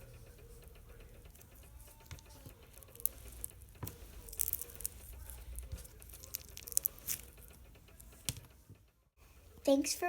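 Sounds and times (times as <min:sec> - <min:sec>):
soft clicks and crackles of slime: 0:01.3 - 0:08.4.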